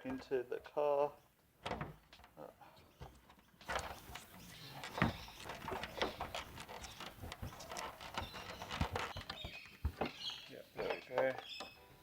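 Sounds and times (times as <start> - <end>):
hands handling car parts: 3.6 - 11.5.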